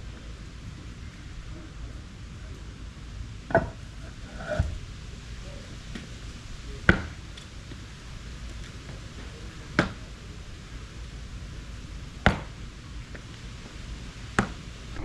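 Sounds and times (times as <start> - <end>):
concrete pavers clacking: 3.5 - 4.8, 5.5 - 11.0, 12.2 - 15.0.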